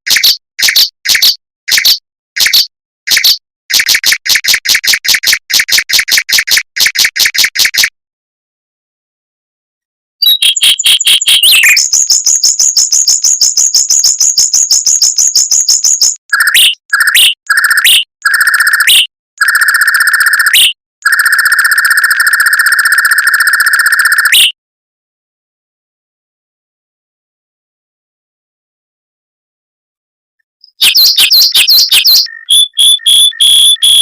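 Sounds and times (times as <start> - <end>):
mockingbird singing trills: 10.2 - 18.0, 30.6 - 34.0.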